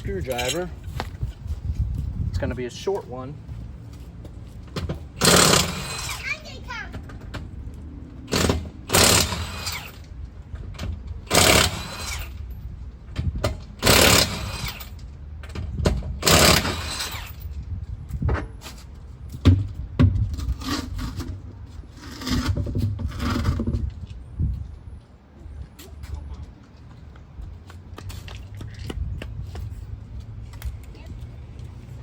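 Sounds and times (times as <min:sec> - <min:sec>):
power tool bursts: 0:05.2 - 0:06.2, 0:08.3 - 0:10.0, 0:11.3 - 0:12.4, 0:13.8 - 0:15.0, 0:16.2 - 0:17.4.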